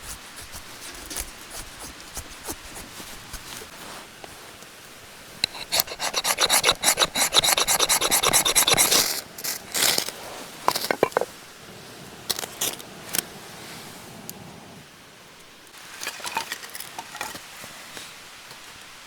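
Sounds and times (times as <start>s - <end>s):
hand saw cutting wood: 0.0s - 3.7s, 5.4s - 10.1s.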